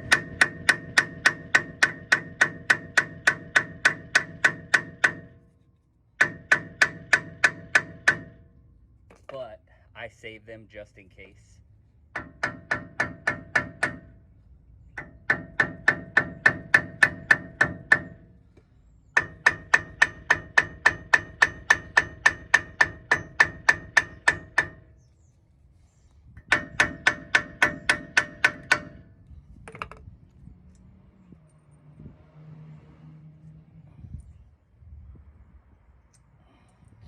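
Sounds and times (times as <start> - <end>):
hammer striking metal: 0.0 - 5.3, 6.2 - 8.4, 12.1 - 14.1, 15.0 - 18.2, 19.2 - 24.8, 26.4 - 29.0.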